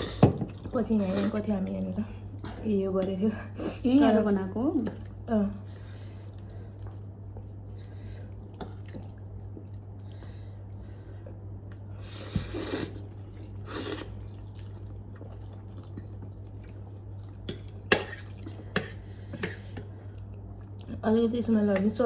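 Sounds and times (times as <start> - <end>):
steady low hum: 0.0 - 22.0
slurping noodles: 12.0 - 15.9.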